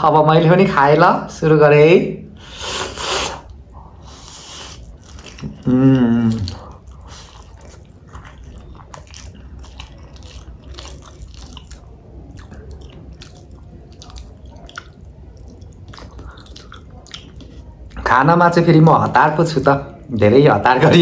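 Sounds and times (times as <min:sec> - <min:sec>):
chewing noodles: 0:02.6 - 0:18.0.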